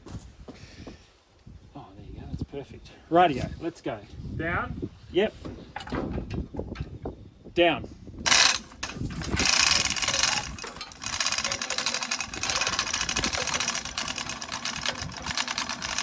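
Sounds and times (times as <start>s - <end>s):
fast mechanical rattle: 8.2s - 16.0s.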